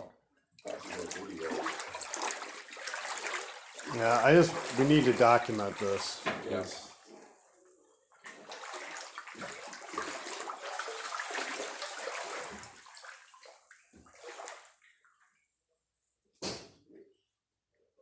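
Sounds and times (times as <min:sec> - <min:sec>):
wading through splashing water: 0:00.6 - 0:06.2, 0:08.2 - 0:15.2.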